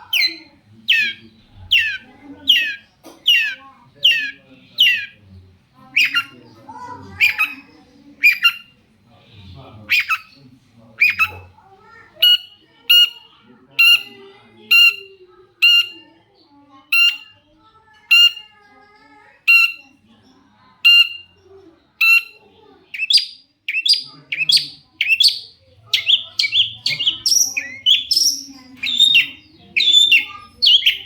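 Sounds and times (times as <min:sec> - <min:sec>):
bird calling: 0:00.0 - 0:05.2, 0:05.8 - 0:08.8, 0:09.8 - 0:10.4, 0:11.0 - 0:11.5, 0:12.2 - 0:16.1, 0:18.1 - 0:18.5, 0:22.0 - 0:31.0.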